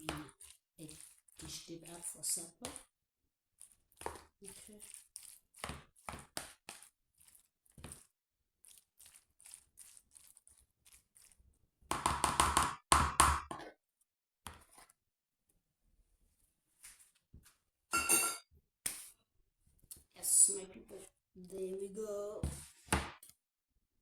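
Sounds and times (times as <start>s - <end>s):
kitchen clattering: 17.9s - 18.4s
utensils knocking on a pot: 18.0s - 18.4s.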